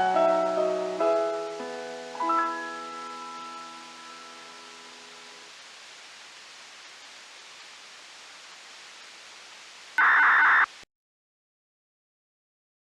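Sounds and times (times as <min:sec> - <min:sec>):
radio receiver hiss: 0:07.7 - 0:10.9
loud burst of radio noise: 0:10.0 - 0:10.7.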